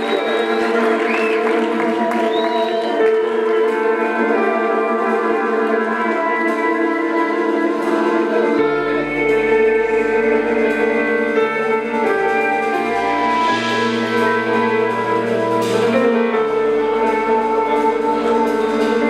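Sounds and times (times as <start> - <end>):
deep bass line: 0.0 - 19.0
jazz fusion band: 0.0 - 19.0.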